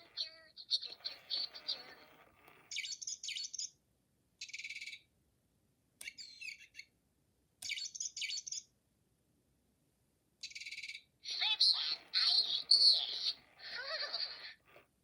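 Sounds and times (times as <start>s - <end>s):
bird chirping in trilling bursts: 2.7s - 3.7s, 10.5s - 14.4s.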